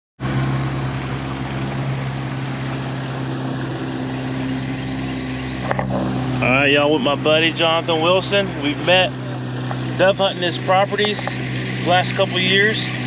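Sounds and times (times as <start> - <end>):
engine running steadily: 0.2 - 13.0.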